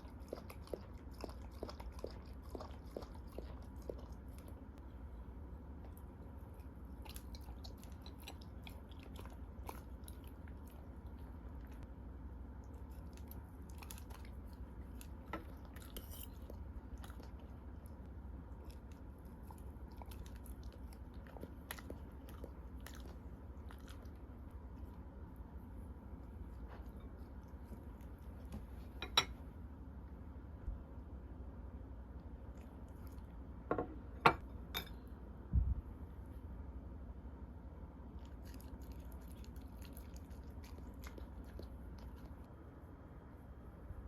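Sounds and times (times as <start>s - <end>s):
dog chewing food: 0.0s - 4.8s, 5.7s - 11.8s, 12.6s - 25.0s, 38.2s - 42.6s
steady low hum: 0.0s - 44.0s.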